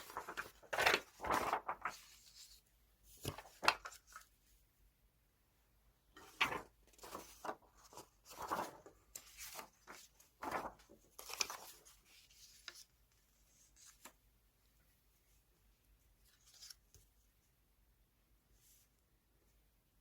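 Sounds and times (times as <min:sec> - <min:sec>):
paper rustling: 0:00.0 - 0:04.4, 0:06.2 - 0:14.2, 0:16.2 - 0:17.1.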